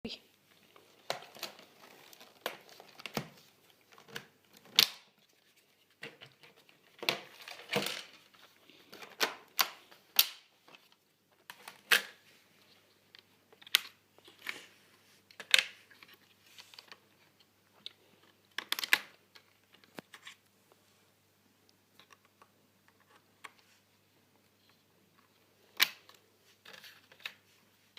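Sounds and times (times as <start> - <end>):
rustling: 0.3 - 21.2.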